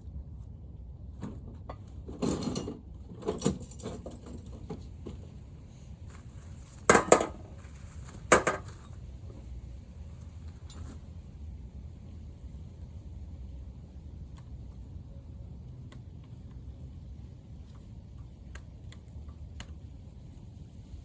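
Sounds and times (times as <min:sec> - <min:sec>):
metal tools clanking: 0:02.1 - 0:04.7.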